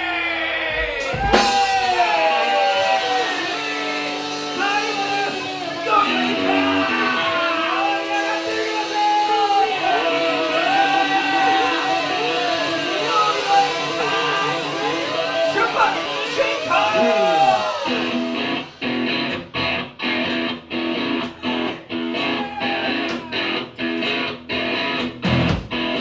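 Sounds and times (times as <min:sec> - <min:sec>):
rock guitar: 0:00.7 - 0:26.0
person singing: 0:01.0 - 0:18.5.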